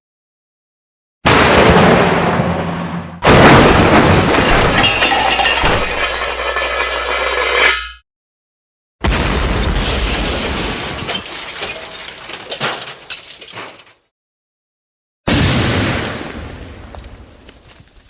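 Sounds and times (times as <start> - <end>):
explosion blast with deep rumble: 1.3 - 4.7, 9.0 - 11.1, 15.3 - 16.8
debris crackling and clicking: 3.3 - 8.0, 10.8 - 14.0.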